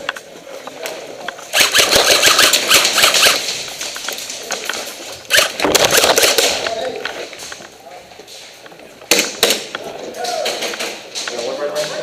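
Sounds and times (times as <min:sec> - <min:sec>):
airsoft guns firing bursts: 0:01.5 - 0:03.7, 0:05.3 - 0:06.6.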